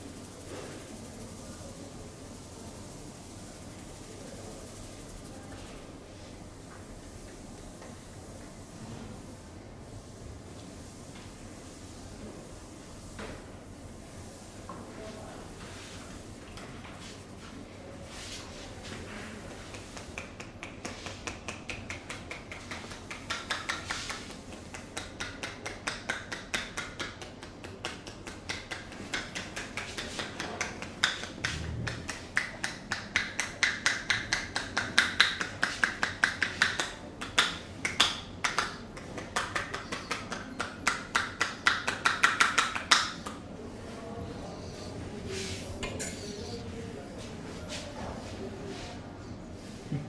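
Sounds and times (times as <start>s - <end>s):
hands slapping and tapping: 19.4s - 43.4s.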